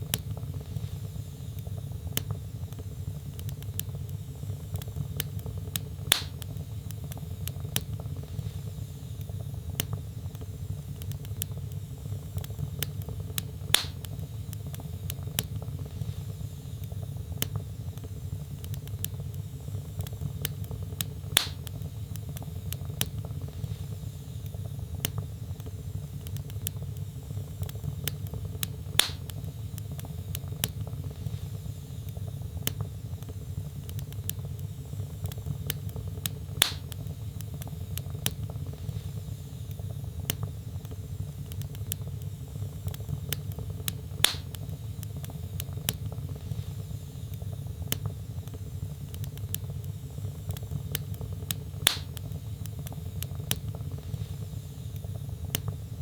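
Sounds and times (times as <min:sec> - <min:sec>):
fire crackling: 0:00.0 - 0:56.0
loud sharp fire pop: 0:06.1 - 0:06.4, 0:13.8 - 0:14.0, 0:21.4 - 0:21.7, 0:29.0 - 0:29.3, 0:36.6 - 0:36.9, 0:44.2 - 0:44.5, 0:51.8 - 0:52.2.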